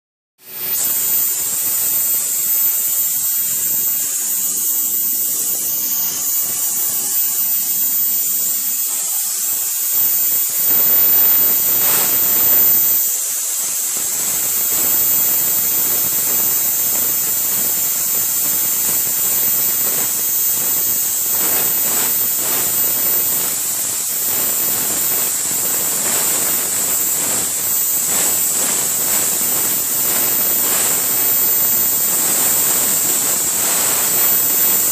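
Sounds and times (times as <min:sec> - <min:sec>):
plasma cutter hiss and whine: 0:00.4 - 0:34.9.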